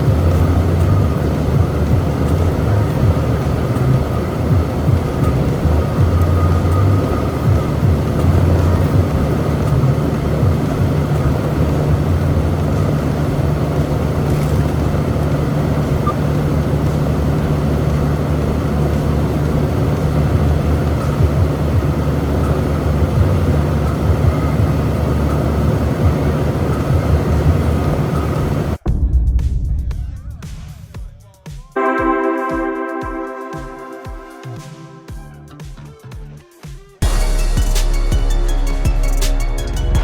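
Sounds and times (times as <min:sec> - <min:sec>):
truck engine and road rumble: 0:00.0 - 0:29.4.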